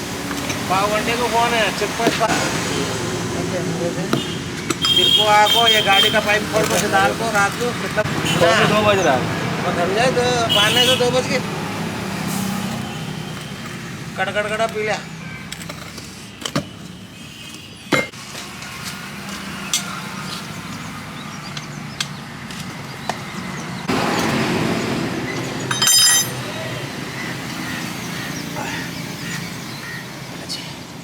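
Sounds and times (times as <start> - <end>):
vehicle engine: 23.3 - 29.4
clicks and clinks: 25.7 - 26.5.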